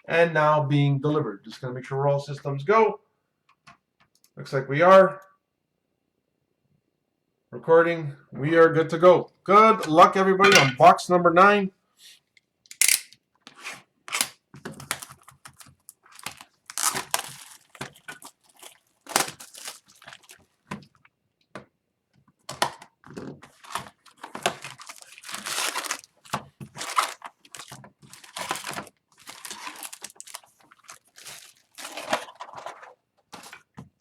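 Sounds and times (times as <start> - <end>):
plastic wrapping crinkling: 14.7 - 21.0, 23.4 - 33.7.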